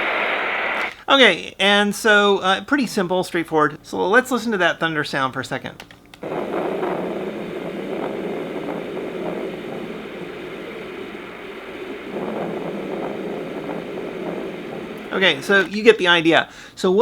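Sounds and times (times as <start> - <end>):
sound machine white noise: 0.0 - 1.0, 6.1 - 17.0.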